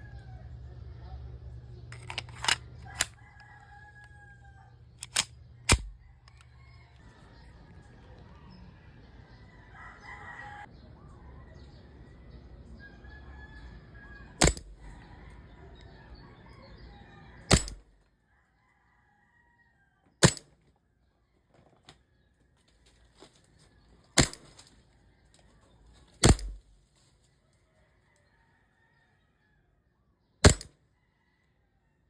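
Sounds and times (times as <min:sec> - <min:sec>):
airsoft gun shots: 0:05.0 - 0:06.0, 0:14.4 - 0:14.8, 0:17.5 - 0:17.8, 0:20.2 - 0:20.5, 0:24.2 - 0:24.4, 0:26.2 - 0:26.6, 0:30.4 - 0:30.7.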